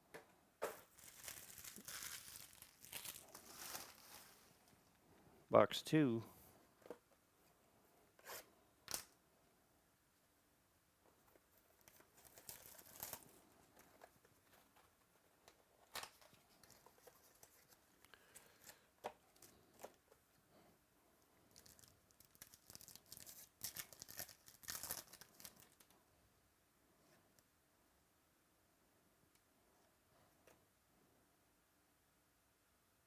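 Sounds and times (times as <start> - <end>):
wrapping tearing and crinkling: 0.7 - 4.5, 11.8 - 14.0, 21.5 - 25.9.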